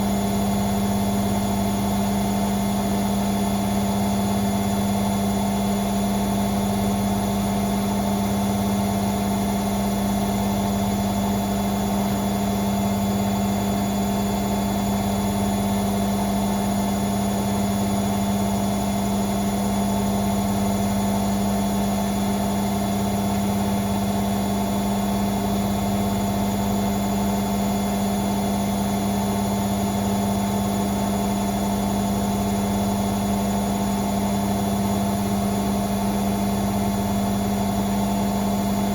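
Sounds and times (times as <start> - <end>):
washing machine spinning: 5.4 - 38.9.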